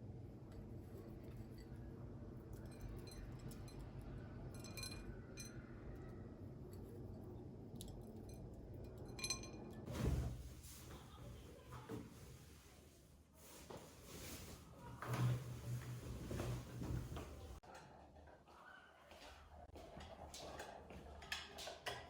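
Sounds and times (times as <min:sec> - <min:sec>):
dishware clinking: 0:04.5 - 0:05.7, 0:08.1 - 0:10.0.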